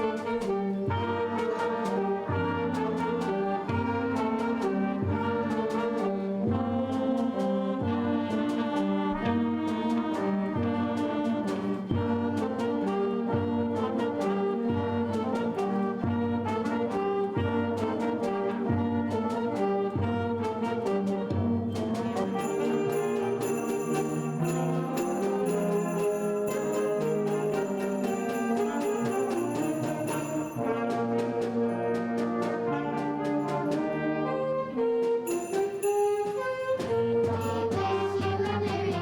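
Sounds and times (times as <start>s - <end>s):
brass band playing: 0.0s - 39.0s
percussion strokes: 19.1s - 39.0s.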